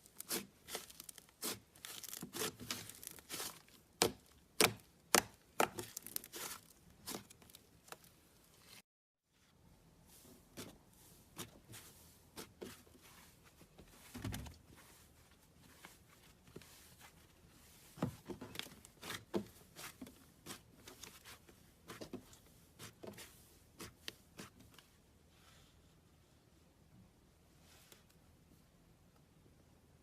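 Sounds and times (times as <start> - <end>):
soft rustle: 6.2 - 26.7, 27.5 - 28.7.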